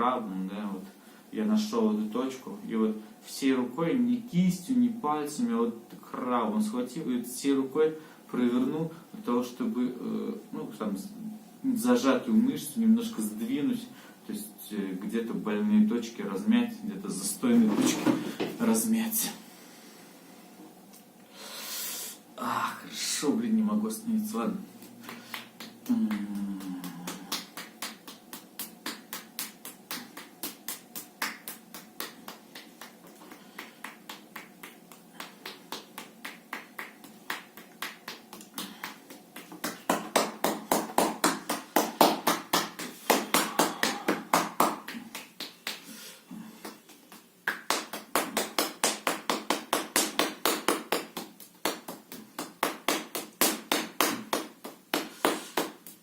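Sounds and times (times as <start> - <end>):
hand slapping against body: 24.8 - 46.0, 46.6 - 56.0.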